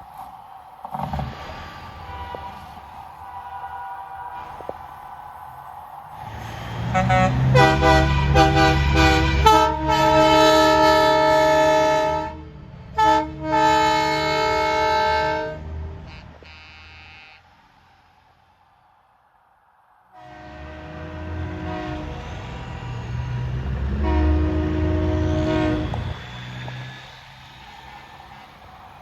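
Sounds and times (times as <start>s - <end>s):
truck horn chord: 6.9s - 12.4s.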